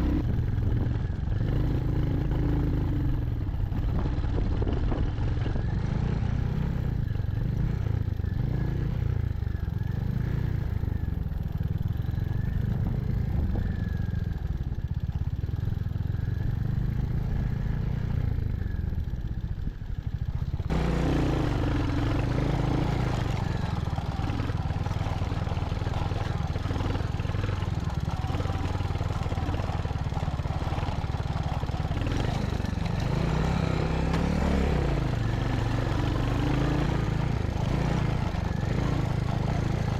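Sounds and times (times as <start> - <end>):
motorcycle engine running: 0.0 - 39.9
road and wind noise: 0.0 - 39.9.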